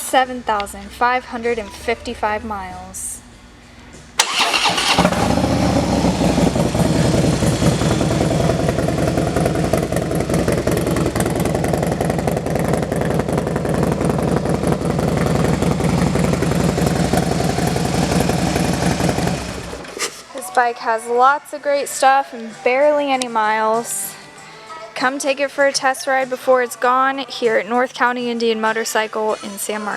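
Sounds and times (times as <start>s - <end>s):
motorcycle engine running: 0.2s - 19.8s.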